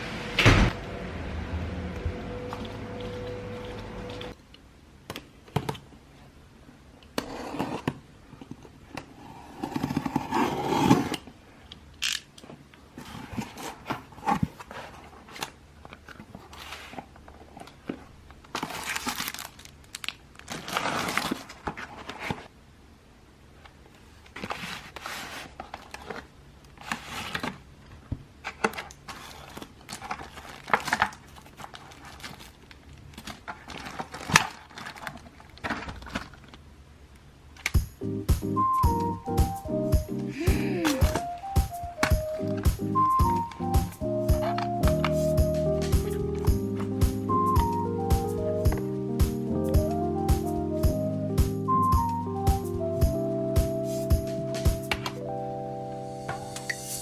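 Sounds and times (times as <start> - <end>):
crinkling and rustling of handling: 7.0 - 22.6, 23.5 - 37.8.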